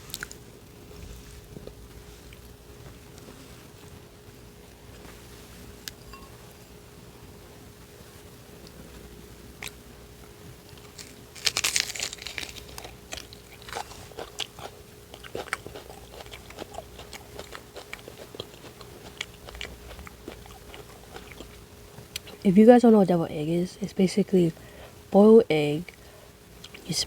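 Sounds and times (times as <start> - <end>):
person chewing: 0.0 - 0.4, 10.7 - 22.5
crunchy bite into sandwich: 10.7 - 22.4.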